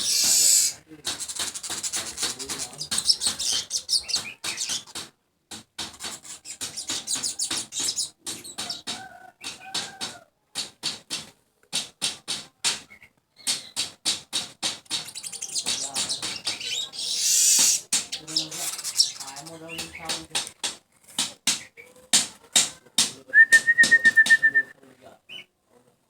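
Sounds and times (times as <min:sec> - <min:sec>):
bird chattering: 0:00.0 - 0:05.0, 0:15.0 - 0:20.2.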